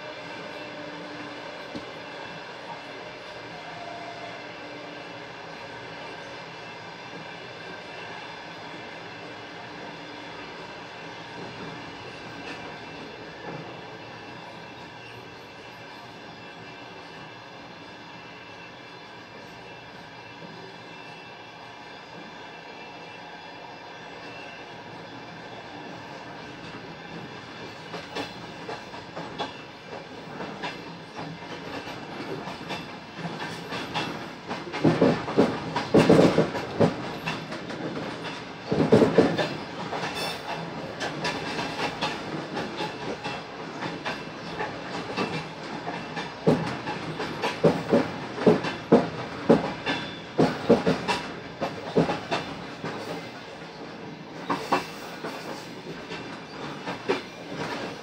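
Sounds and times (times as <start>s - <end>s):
train wheels clattering over rails: 25.6s - 58.0s.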